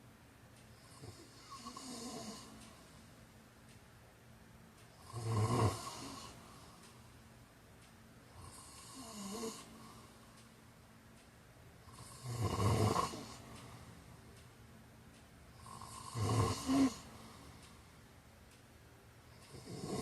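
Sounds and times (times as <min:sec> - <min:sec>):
person snoring: 0:00.8 - 0:02.5, 0:05.0 - 0:06.4, 0:08.4 - 0:09.7, 0:11.9 - 0:13.5, 0:15.6 - 0:17.1, 0:19.4 - 0:20.0.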